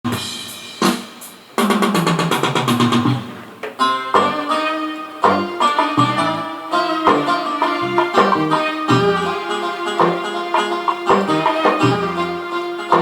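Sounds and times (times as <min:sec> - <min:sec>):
drum beat: 0:00.1 - 0:04.6, 0:05.2 - 0:06.5, 0:07.1 - 0:13.0
electronic keyboard melody: 0:03.8 - 0:13.0.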